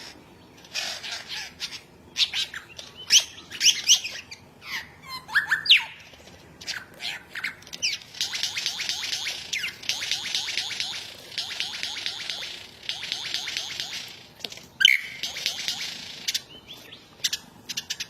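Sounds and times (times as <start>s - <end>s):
bird chatter: 0.0s - 18.0s
bird whistles and squawks: 0.6s - 11.1s, 14.8s - 18.0s.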